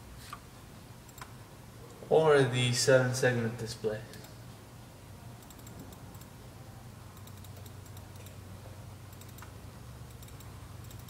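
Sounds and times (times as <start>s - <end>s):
steady low hum: 0.0s - 11.0s
keyboard typing: 5.4s - 6.3s, 7.2s - 8.4s, 9.1s - 11.0s.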